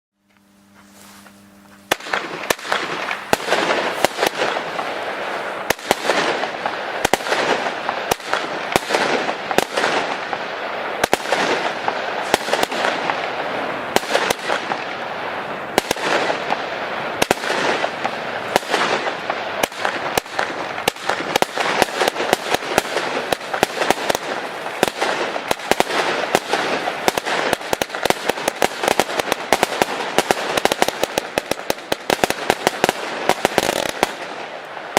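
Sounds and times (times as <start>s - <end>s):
firework crackling hiss: 0.6s - 34.9s
firework bangs: 1.9s - 34.9s.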